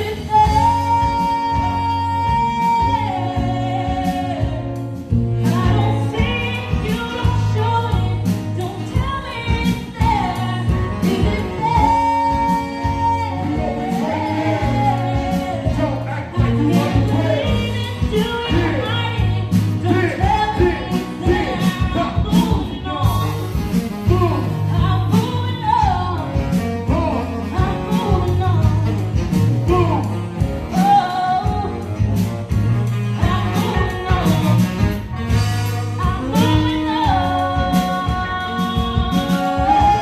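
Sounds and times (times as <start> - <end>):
live band playing: 0.0 - 40.0
person singing: 5.4 - 32.0, 36.0 - 40.0.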